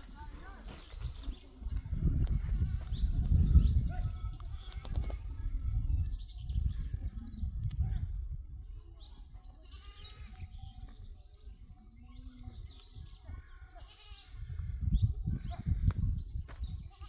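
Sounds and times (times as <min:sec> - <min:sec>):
sheep or goats bleating: 0:09.6 - 0:10.3, 0:13.8 - 0:14.4.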